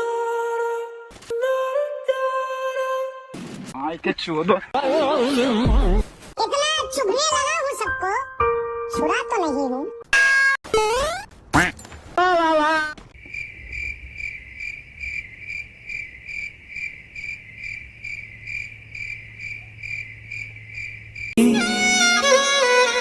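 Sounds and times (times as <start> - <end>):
cartoon pitch slide effect: 10.1 - 11.3
crickets chirping: 13.2 - 21.4.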